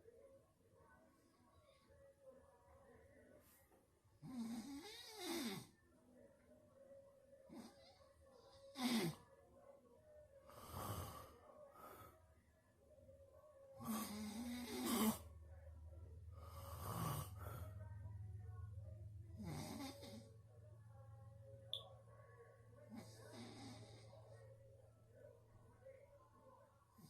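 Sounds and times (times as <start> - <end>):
person snoring: 13.8 - 15.2.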